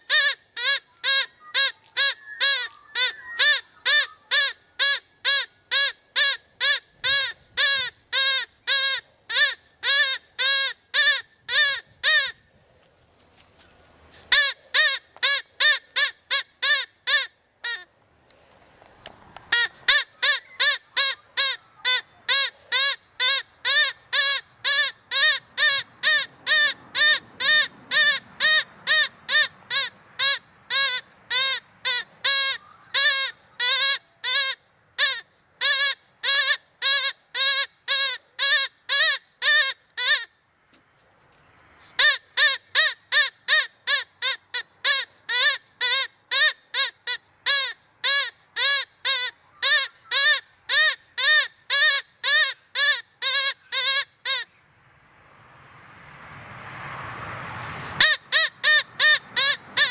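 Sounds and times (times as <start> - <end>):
rabbit squealing: 0.1 - 12.3, 58.0 - 59.9.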